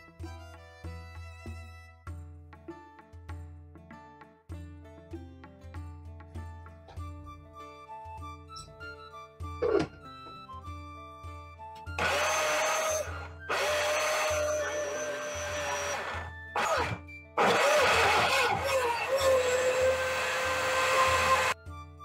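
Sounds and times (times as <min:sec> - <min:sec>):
background music: 0:00.0 - 0:22.0
small motor whining: 0:12.0 - 0:21.6.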